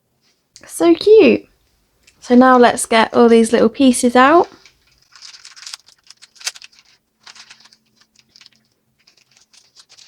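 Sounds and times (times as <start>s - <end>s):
packaging rustling: 4.5s - 10.0s
plastic toy parts clicking: 4.9s - 10.0s.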